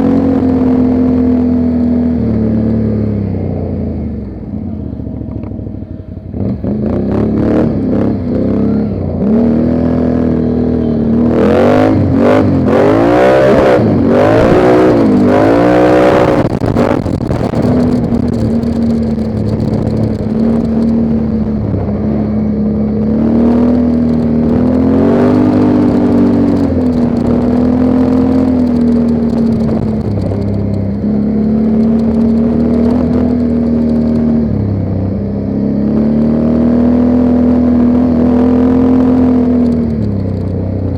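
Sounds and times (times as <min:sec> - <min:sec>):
atv engine revving: 0:00.0 - 0:40.9
knocks and rattles: 0:16.4 - 0:21.2, 0:23.8 - 0:34.3.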